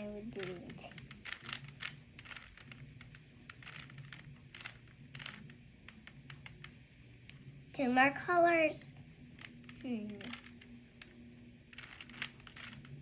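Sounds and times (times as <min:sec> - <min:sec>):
puzzle cube plastic clicks: 0:00.3 - 0:06.8, 0:09.4 - 0:13.0.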